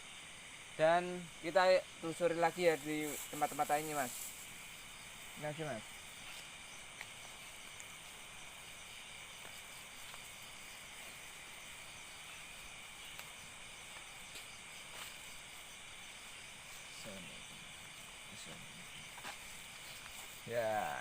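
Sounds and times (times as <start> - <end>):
crickets trilling: 0.0 - 21.0
faint ticks: 6.3 - 8.0, 13.0 - 15.0.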